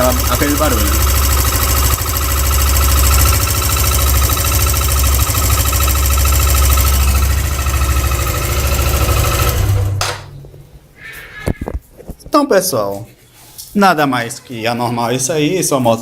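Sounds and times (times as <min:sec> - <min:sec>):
motorcycle engine idling: 0:00.0 - 0:10.0.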